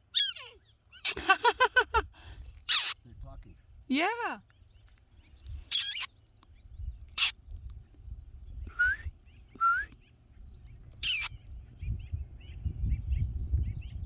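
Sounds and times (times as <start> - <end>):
prairie dogs barking: 0.0 - 1.2, 2.7 - 3.0, 5.7 - 6.1, 11.0 - 11.3
wind rumble on microphone: 6.6 - 9.6, 10.3 - 14.0
prairie dogs rising calls: 11.0 - 11.3.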